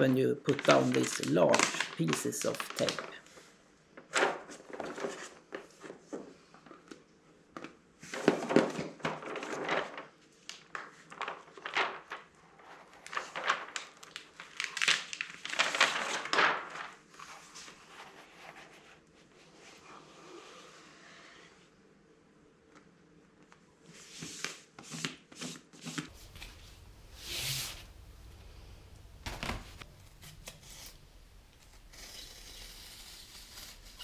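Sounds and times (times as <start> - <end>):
tape crinkling and rustling: 0.0 - 3.4, 7.6 - 17.6, 29.2 - 34.0.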